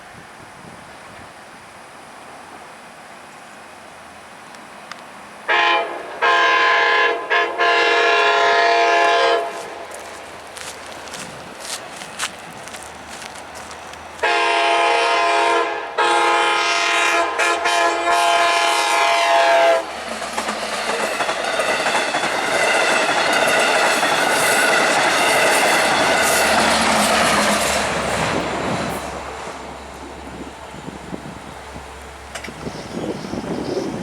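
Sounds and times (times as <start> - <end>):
locomotive air horn blasts: 5.5 - 9.9, 14.2 - 19.9
train wheels clattering on rails: 19.8 - 30.3, 32.3 - 34.0.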